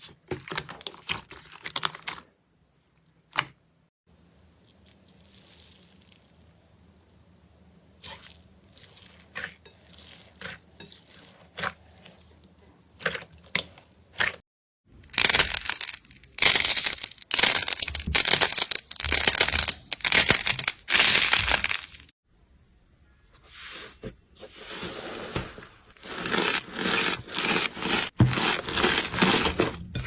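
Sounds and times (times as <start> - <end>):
crunchy slime squeezes: 15.1 - 22.1
slime crackling and popping: 15.1 - 22.1.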